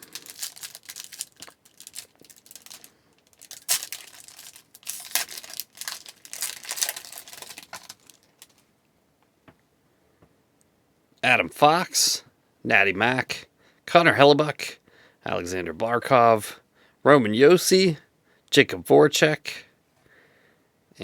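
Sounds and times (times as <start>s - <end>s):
wrapper being torn and crinkled: 0.0s - 8.6s.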